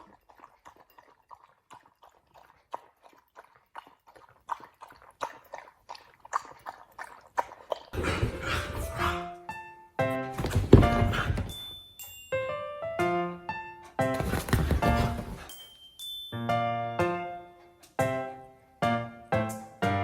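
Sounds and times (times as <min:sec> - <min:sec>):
dog clicking and tapping: 0:07.9 - 0:09.2, 0:10.4 - 0:11.7, 0:14.0 - 0:15.6.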